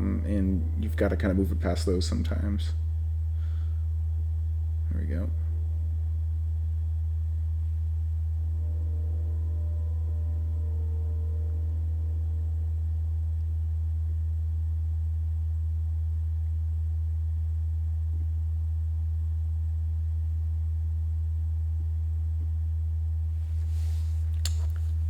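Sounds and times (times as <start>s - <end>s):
deep electrical hum: 0.0s - 25.0s
faint higher tones: 7.8s - 15.1s.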